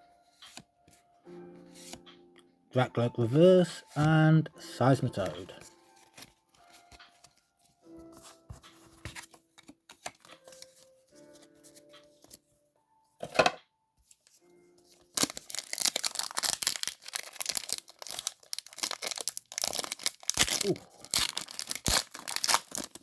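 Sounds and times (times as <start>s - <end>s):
handling cards and packaging: 0.2s - 12.5s, 13.2s - 23.0s
foil wrapper tearing and crinkling: 15.1s - 23.0s.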